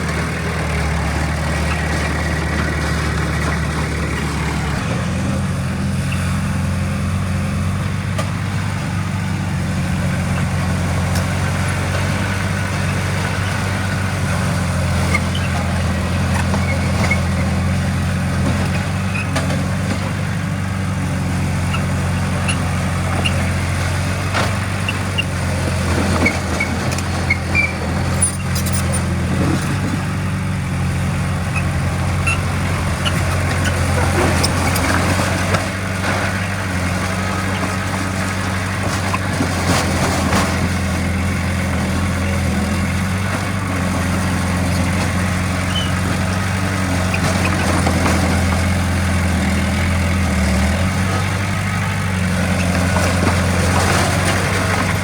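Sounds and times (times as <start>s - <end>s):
diesel engine humming: 0.0s - 55.0s
short squeaks and clicks: 15.0s - 17.5s, 19.0s - 19.6s, 21.7s - 23.6s, 26.0s - 29.9s, 31.5s - 35.6s, 44.8s - 48.6s.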